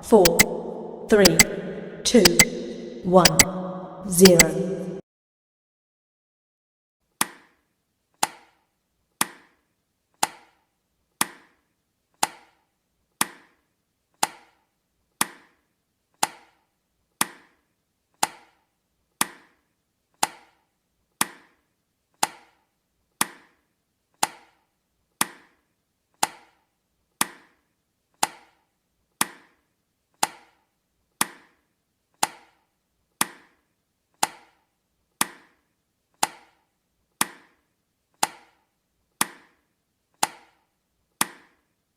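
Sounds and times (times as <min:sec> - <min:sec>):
sharp timer ticks: 0:00.0 - 0:04.7.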